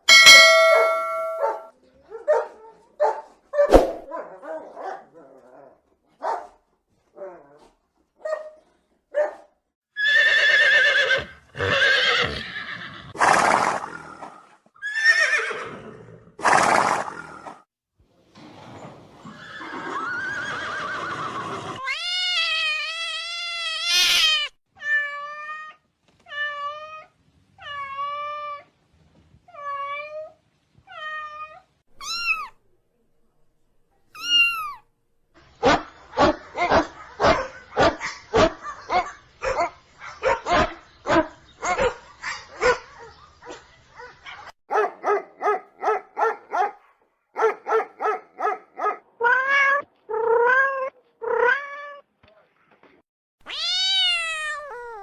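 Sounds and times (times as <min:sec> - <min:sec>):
cat meowing: 0:21.8 - 0:27.0, 0:30.9 - 0:32.6, 0:34.2 - 0:34.9, 0:53.4 - 0:55.0.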